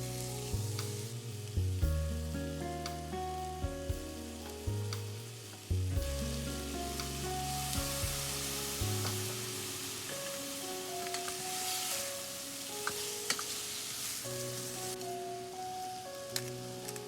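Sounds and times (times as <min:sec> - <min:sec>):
background music with bass line: 0:00.0 - 0:09.7
food sizzling in a pan: 0:00.0 - 0:15.6.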